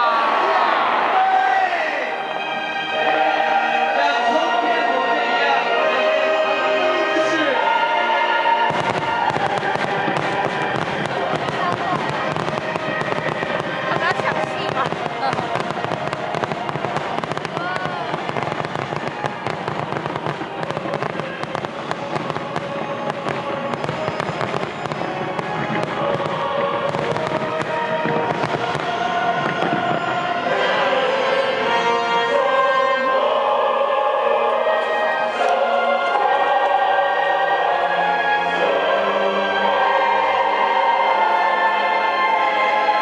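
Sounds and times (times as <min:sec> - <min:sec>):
music with singing: 0:00.0 - 0:43.0
fireworks crackling and popping: 0:08.6 - 0:32.1.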